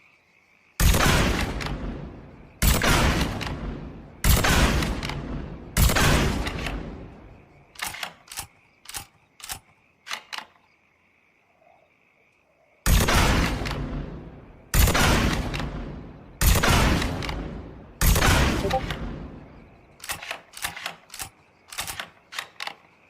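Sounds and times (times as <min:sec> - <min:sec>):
rifle shots with echo: 0:00.8 - 0:06.9, 0:12.9 - 0:19.3.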